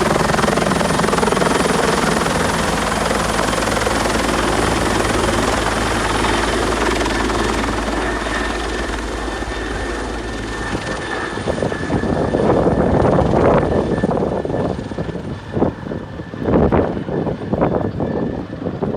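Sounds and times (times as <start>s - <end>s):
helicopter rotor and engine: 0.0s - 18.9s.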